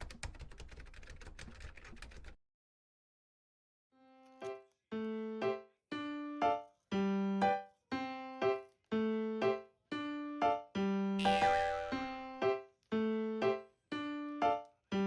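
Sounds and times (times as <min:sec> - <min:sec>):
piano-like keyboard tune: 0:04.4 - 0:15.0.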